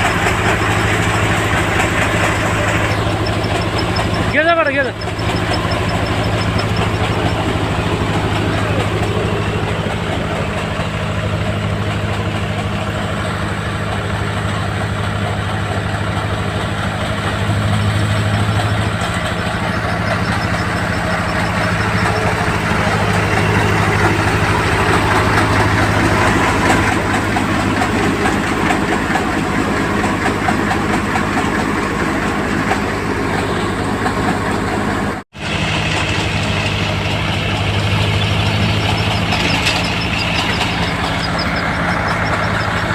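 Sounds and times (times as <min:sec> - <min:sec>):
mechanical clatter: 0:00.0 - 0:11.0, 0:36.0 - 0:42.9
harvester engine humming: 0:00.0 - 0:42.9.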